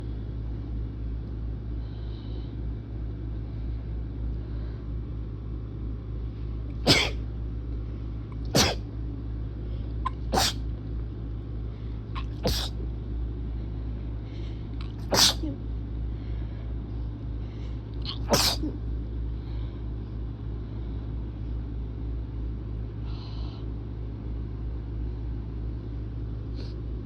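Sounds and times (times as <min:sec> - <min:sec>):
steady low hum: 0:00.0 - 0:27.0
person sneezing: 0:06.9 - 0:07.2, 0:08.6 - 0:08.8, 0:10.1 - 0:10.6, 0:12.2 - 0:12.8, 0:15.0 - 0:15.6, 0:18.1 - 0:18.8.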